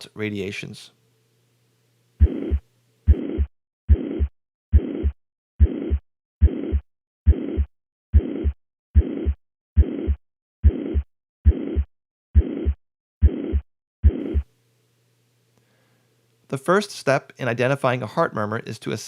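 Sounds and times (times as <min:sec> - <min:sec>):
heartbeat thumps: 0:02.2 - 0:14.5
high-pitched heart murmur: 0:02.2 - 0:14.5.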